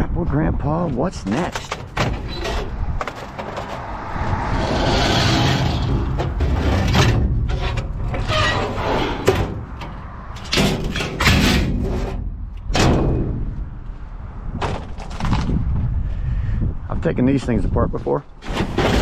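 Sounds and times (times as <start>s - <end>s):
steady low rumble: 0.0s - 18.0s
metal freezer knocks and scrapes: 1.3s - 13.8s, 14.6s - 15.6s, 18.4s - 19.0s.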